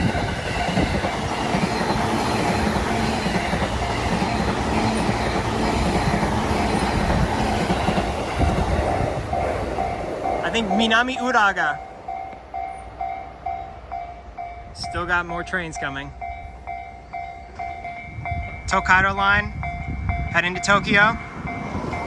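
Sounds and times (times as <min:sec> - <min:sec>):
train wheels clattering over rails: 0:00.0 - 0:11.0
crossing warning bell dinging: 0:00.0 - 0:22.0.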